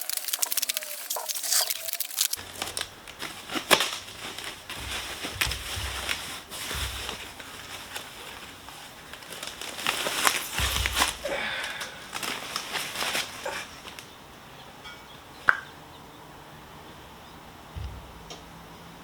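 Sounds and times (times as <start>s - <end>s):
packaging crinkling and tearing: 0.0s - 14.1s.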